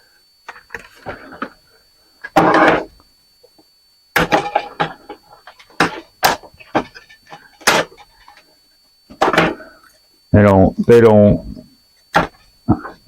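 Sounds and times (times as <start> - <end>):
disc drive parts clanking: 4.2 - 8.5, 9.1 - 9.7.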